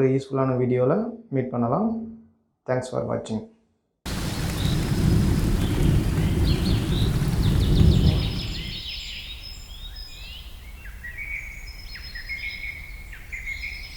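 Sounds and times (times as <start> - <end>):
loud low rumble: 4.1 - 8.8
birds chirping and calling: 4.1 - 10.4.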